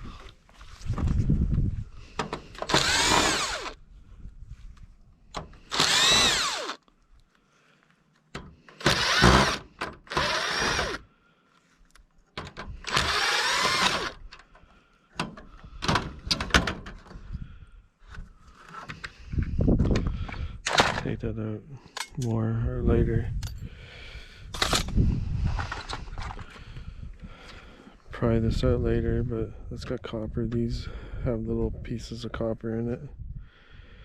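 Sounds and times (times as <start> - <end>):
cordless drill whining: 2.4 - 3.8, 5.5 - 6.9, 8.6 - 11.1, 12.8 - 14.4.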